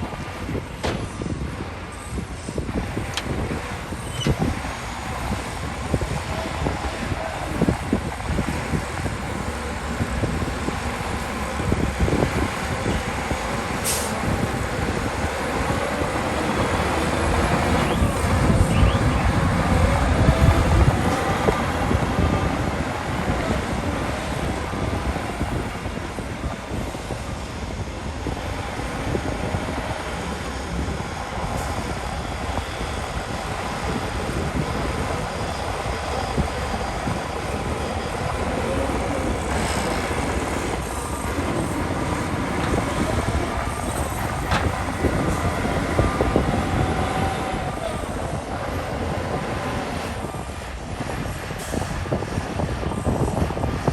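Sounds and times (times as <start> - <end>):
bulldozer engine running: 0.0 - 53.9.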